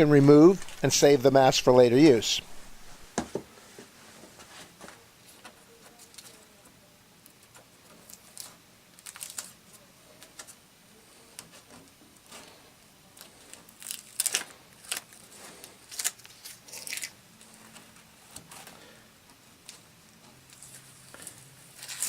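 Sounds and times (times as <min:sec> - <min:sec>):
plastic sheets crinkling: 0:00.0 - 0:03.2, 0:07.9 - 0:10.6, 0:11.4 - 0:19.0, 0:19.6 - 0:22.0
plastic crackles: 0:00.5 - 0:01.1, 0:07.2 - 0:10.6, 0:11.4 - 0:19.0, 0:19.6 - 0:22.0.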